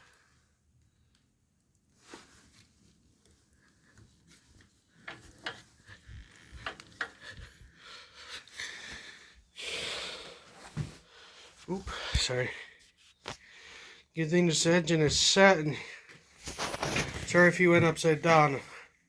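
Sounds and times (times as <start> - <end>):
light knocks clicks and rubbing: 4.6 - 7.5.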